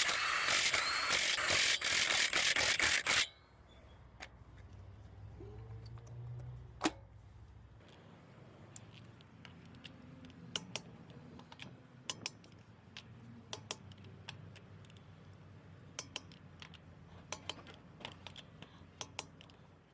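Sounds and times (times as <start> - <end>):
sharp clicks and taps: 8.7 - 15.0, 16.0 - 19.7.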